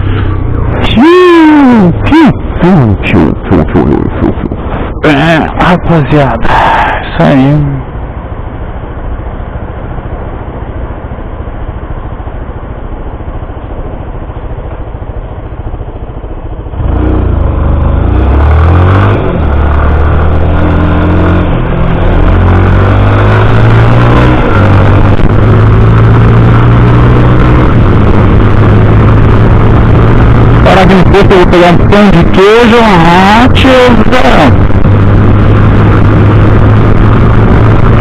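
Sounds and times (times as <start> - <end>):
motorcycle engine accelerating: 0.0 - 5.5, 7.8 - 38.0
gear changes: 0.0 - 38.0.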